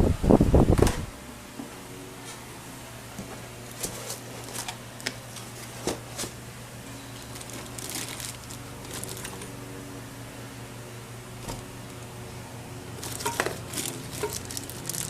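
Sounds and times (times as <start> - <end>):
steady low hum: 0.0 - 15.0
packaging crinkling: 7.2 - 9.5, 13.0 - 15.0.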